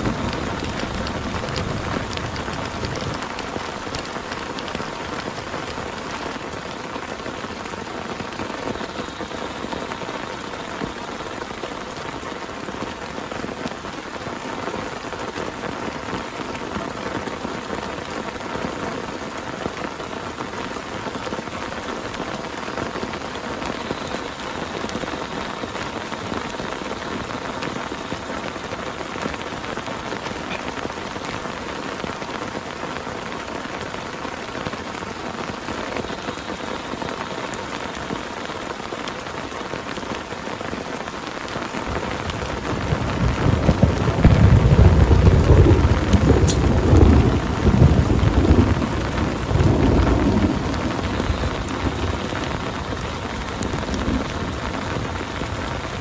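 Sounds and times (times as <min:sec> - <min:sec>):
deep thunder rumble: 0:00.0 - 0:11.3, 0:41.8 - 0:56.0
heavy rain falling: 0:00.0 - 0:56.0.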